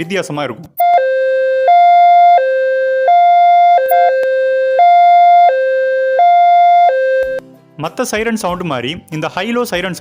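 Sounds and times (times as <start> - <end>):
ambulance hi-lo siren: 0.8 - 7.4.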